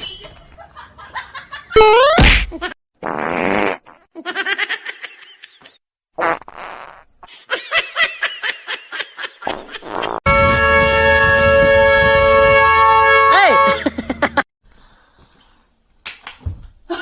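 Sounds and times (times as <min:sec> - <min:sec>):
loud horn-like blare: 0:10.3 - 0:13.9
person laughing: 0:13.4 - 0:14.4.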